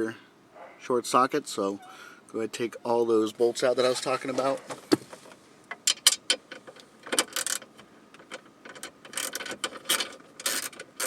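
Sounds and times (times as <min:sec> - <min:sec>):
ratchet clicking: 0:07.2 - 0:07.7, 0:08.7 - 0:11.0.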